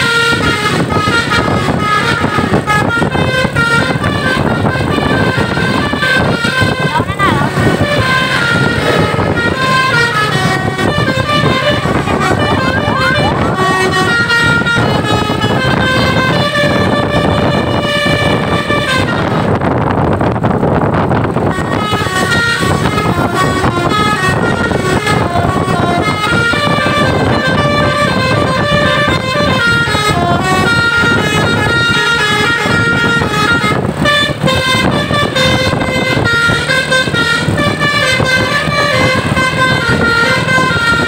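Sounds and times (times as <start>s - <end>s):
bus air horn melody: 0.0s - 41.0s
rushing noise: 0.0s - 41.0s.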